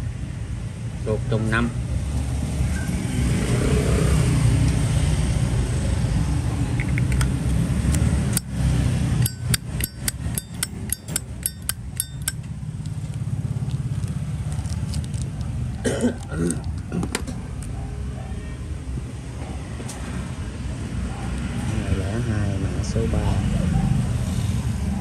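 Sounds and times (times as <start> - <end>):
lighter lid metallic clicks: 9.2 - 12.4.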